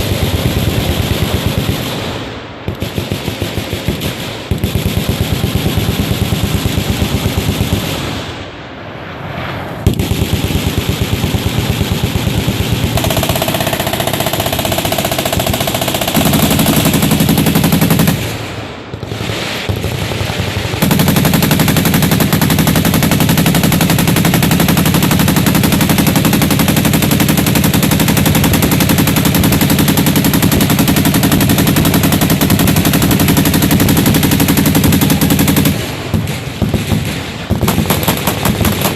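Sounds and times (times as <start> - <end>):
machine guns firing rapidly: 0.0 - 2.1, 2.7 - 8.0, 10.0 - 38.9.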